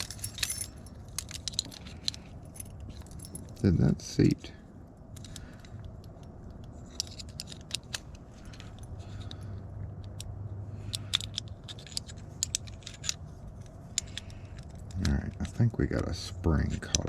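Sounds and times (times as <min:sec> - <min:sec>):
small metal parts clicking: 0:00.0 - 0:03.7, 0:05.0 - 0:17.0.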